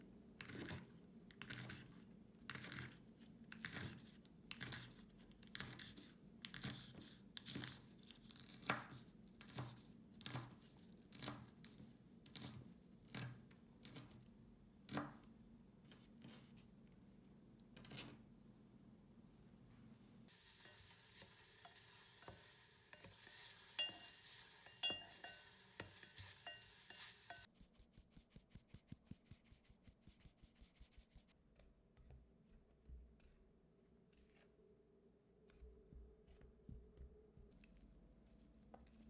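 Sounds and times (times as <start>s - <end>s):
crisp rasping strokes: 20.3s - 31.3s.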